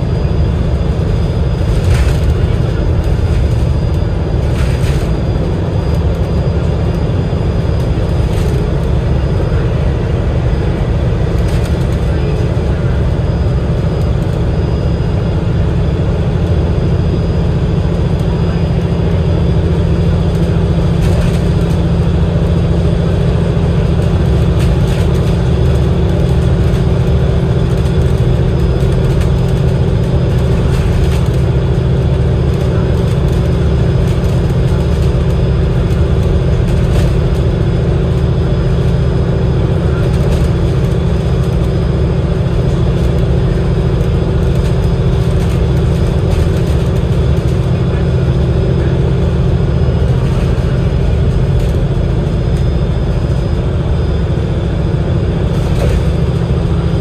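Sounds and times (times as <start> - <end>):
bus diesel engine running: 0.0 - 57.0
road noise: 0.0 - 57.0.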